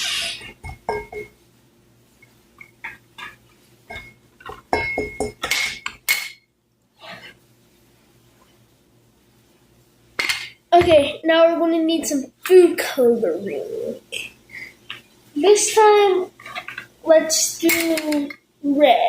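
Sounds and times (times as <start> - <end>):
spoon clinking against a bowl: 0.4 - 1.3, 2.6 - 6.4.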